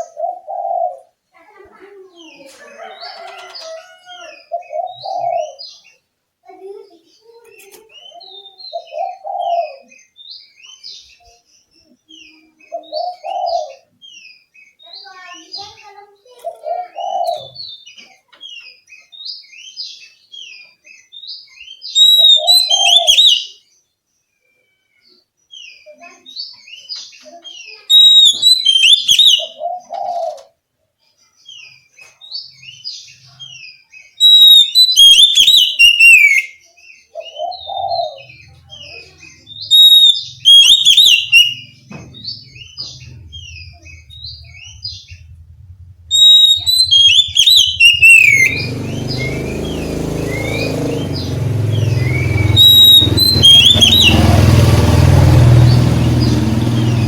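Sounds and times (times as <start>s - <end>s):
bird singing whistles and chatter: 16.5s - 23.7s, 25.6s - 30.0s, 31.5s - 45.4s, 46.1s - 57.0s
steady low rumble: 41.7s - 47.4s.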